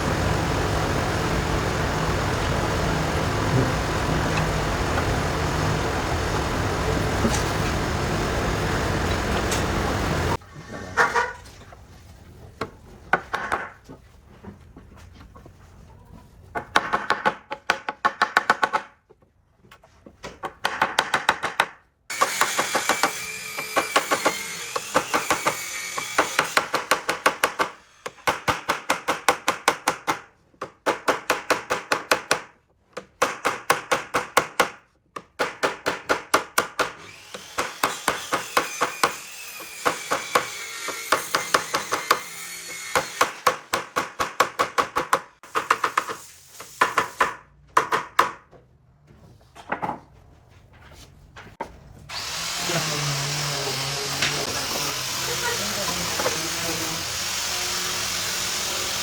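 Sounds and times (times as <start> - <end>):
tool striking wood: 20.4 - 48.6.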